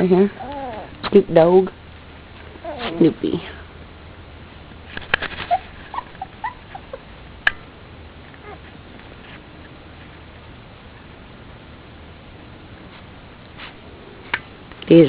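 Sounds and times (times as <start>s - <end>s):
puppies squeaking and whimpering: 0.3s - 1.0s, 2.6s - 3.2s, 5.3s - 7.1s, 8.4s - 8.8s.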